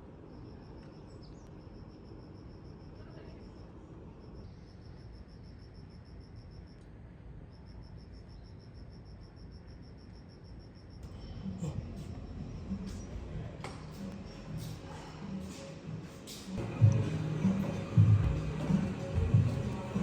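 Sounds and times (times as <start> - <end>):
cricket chirping: 0.0 - 14.8
low background hum: 0.0 - 20.0.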